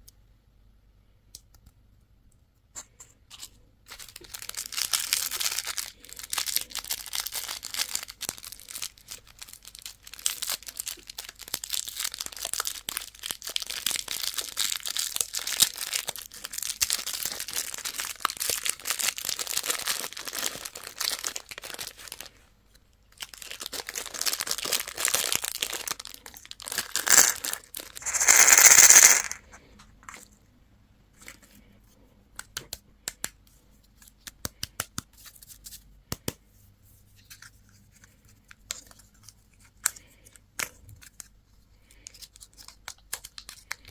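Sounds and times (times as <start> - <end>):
candy wrappers crinkling: 3.3 - 22.4, 23.1 - 29.5, 42.0 - 43.9
wrapper ripping: 23.2 - 29.4.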